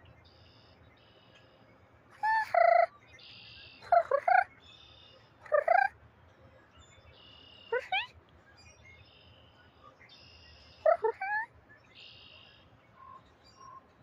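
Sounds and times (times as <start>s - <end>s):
blackbird calls: 2.2s - 6.0s, 9.0s - 13.9s.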